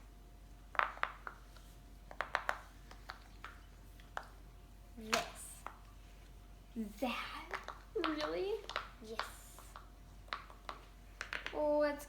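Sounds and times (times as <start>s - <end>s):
fidget toys clicking: 7.4s - 11.6s.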